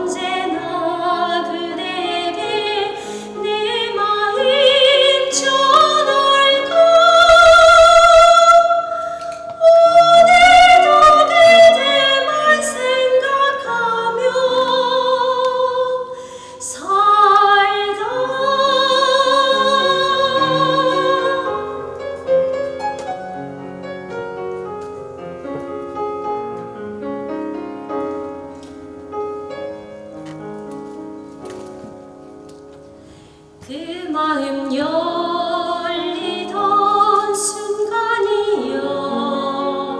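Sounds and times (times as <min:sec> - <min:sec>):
woman singing operatically: 0:00.0 - 0:21.7, 0:33.7 - 0:39.9
piano accompaniment: 0:00.0 - 0:39.9.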